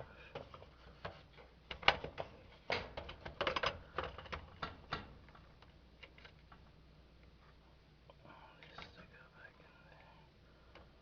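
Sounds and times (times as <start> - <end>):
plastic panel clicking and rattling: 0.4 - 5.2.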